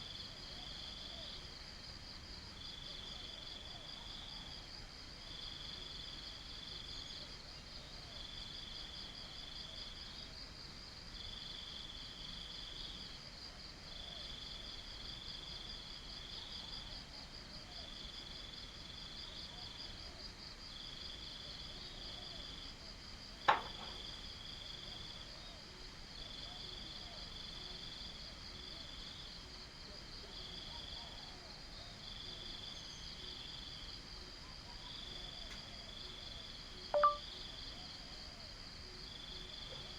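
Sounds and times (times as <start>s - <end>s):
sharp tap: 23.5s - 24.0s
lower insect trill: 34.8s - 37.7s.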